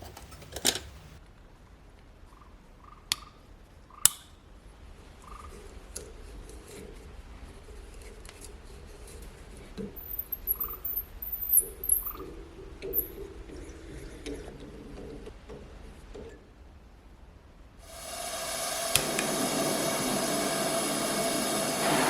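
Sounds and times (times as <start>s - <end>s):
sharp tool clicks: 4.0s - 4.4s
high squeaks: 10.0s - 12.3s.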